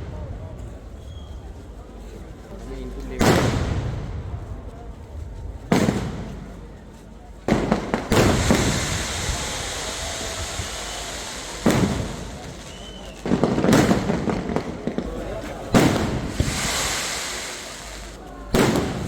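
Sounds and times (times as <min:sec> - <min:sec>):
firework crackling: 0:00.0 - 0:19.0
firework booms: 0:03.2 - 0:04.6, 0:05.6 - 0:06.6, 0:07.5 - 0:19.0.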